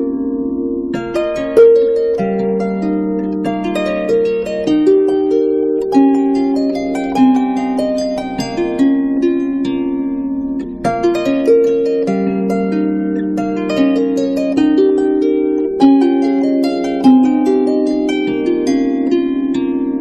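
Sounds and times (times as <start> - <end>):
plucked harp-like string music: 0.0 - 20.0.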